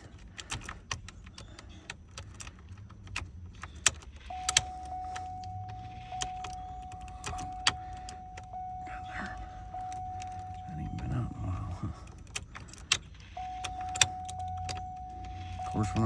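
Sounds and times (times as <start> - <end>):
steady tone: 4.4 - 12.2, 13.3 - 16.0.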